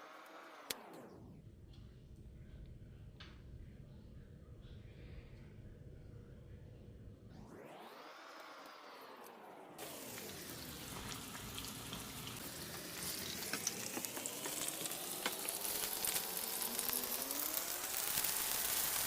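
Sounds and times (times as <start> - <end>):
garlic sizzling in hot oil: 9.8 - 19.0.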